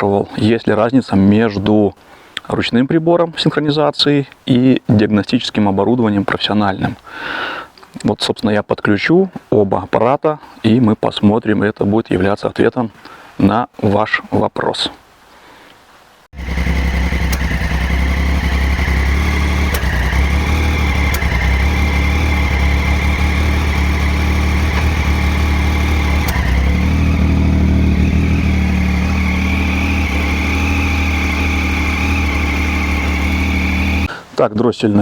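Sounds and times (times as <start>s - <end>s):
motorcycle engine idling: 16.4s - 34.1s.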